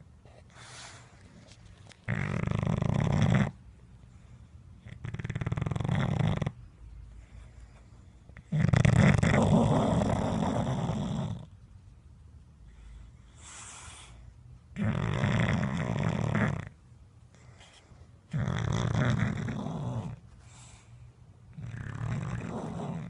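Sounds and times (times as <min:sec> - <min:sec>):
soft airy breath: 0:00.2 - 0:01.7, 0:06.9 - 0:08.4, 0:12.6 - 0:14.6, 0:17.2 - 0:18.3, 0:20.3 - 0:21.5
dog snoring: 0:02.0 - 0:03.6, 0:04.8 - 0:06.6, 0:08.3 - 0:11.5, 0:13.3 - 0:16.8, 0:18.3 - 0:20.2, 0:21.5 - 0:23.0.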